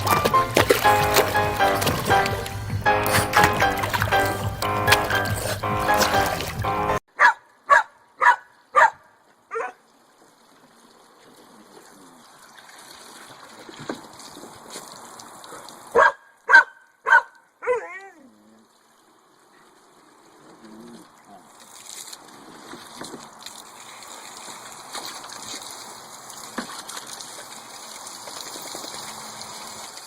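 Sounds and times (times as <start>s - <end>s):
dog barking: 7.2s - 9.8s, 16.0s - 18.0s.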